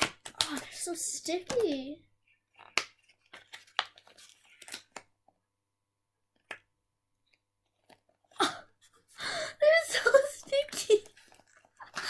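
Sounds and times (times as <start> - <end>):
plastic packaging crinkling: 0.1 - 5.1.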